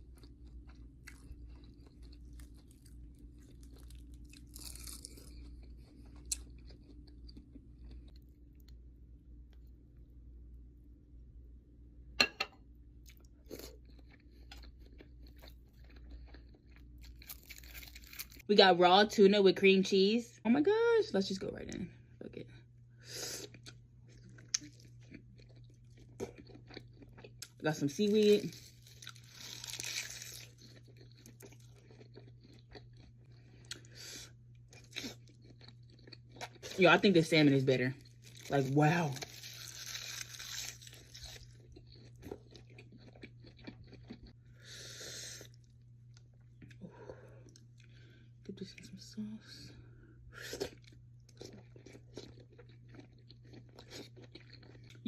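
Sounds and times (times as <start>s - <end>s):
person chewing food: 0.0s - 9.8s, 13.0s - 18.4s, 23.4s - 27.6s, 28.5s - 36.8s, 39.2s - 48.5s, 50.2s - 55.0s
low electrical hum: 0.0s - 55.0s
crunch: 0.1s - 8.8s, 13.0s - 18.4s, 28.1s - 33.9s, 38.0s - 44.3s, 50.6s - 55.0s
wet chewing: 23.4s - 27.6s, 34.6s - 36.8s, 38.0s - 44.4s, 50.5s - 55.0s.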